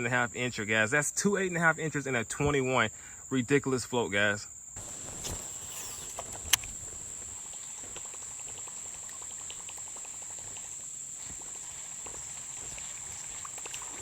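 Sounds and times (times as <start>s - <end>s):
high-pitched insect chorus: 0.0s - 14.0s
sharp click: 4.8s - 6.8s.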